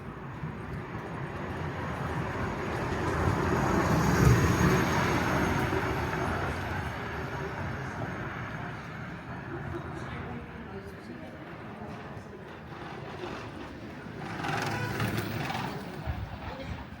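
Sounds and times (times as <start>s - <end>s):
vehicle passing by: 12.9s - 16.2s.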